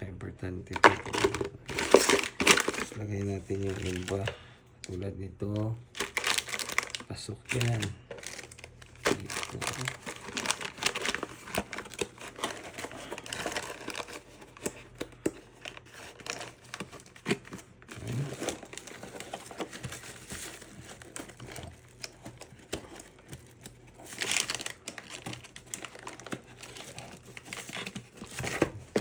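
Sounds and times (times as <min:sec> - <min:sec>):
packaging crinkling and rustling: 0:00.7 - 0:29.0.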